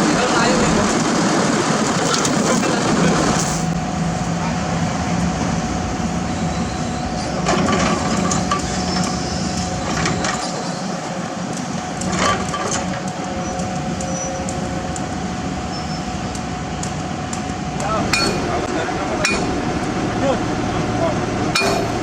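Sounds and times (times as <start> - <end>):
diesel equipment humming: 0.0 - 22.0.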